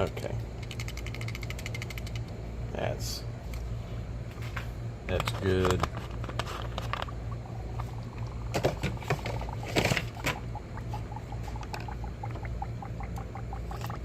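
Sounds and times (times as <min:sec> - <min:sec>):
coolant bubbling pops: 0:06.8 - 0:14.0.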